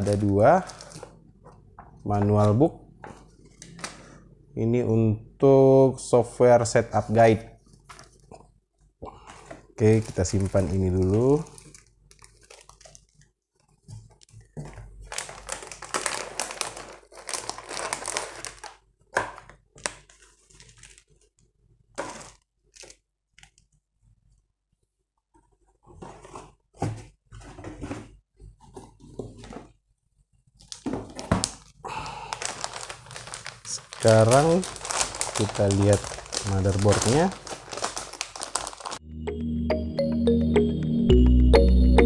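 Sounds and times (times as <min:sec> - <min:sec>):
packaging rustling and crinkling: 0:00.0 - 0:01.2, 0:09.4 - 0:23.0, 0:30.6 - 0:39.0.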